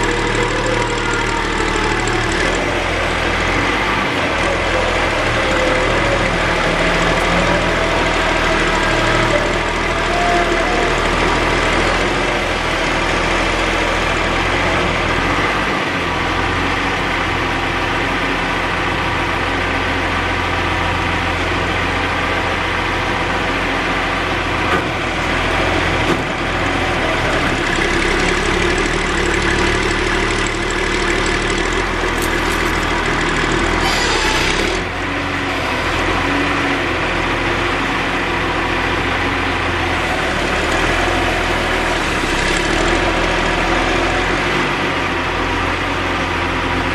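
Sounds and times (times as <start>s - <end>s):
diesel engine running: 0.0s - 46.9s.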